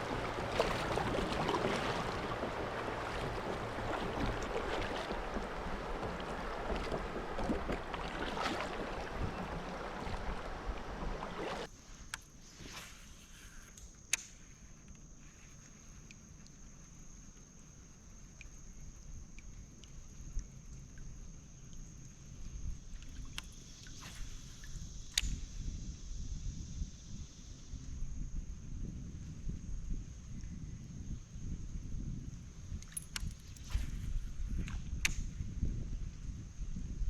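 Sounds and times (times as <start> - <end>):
creek water rushing: 0.0 - 11.7.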